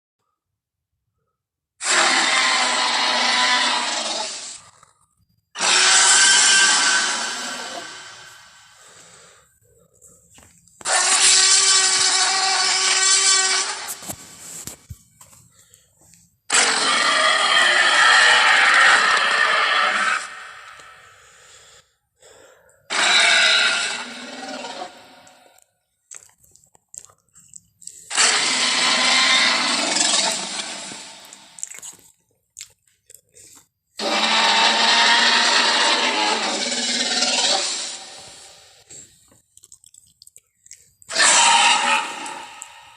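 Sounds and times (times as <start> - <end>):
dinosaur roar: 1.8 - 4.8, 5.6 - 9.0, 10.8 - 14.0, 16.5 - 21.2, 22.9 - 25.5, 28.1 - 31.6, 34.0 - 39.0, 41.1 - 42.9.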